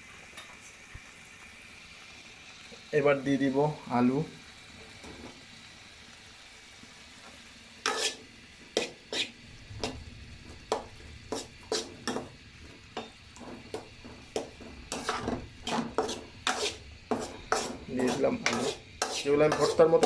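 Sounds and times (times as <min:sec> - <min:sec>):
faint sizzle: 0:00.0 - 0:20.0
spoon scraping a cooking pot: 0:07.8 - 0:08.2, 0:08.8 - 0:09.9, 0:10.7 - 0:12.3, 0:13.0 - 0:20.0.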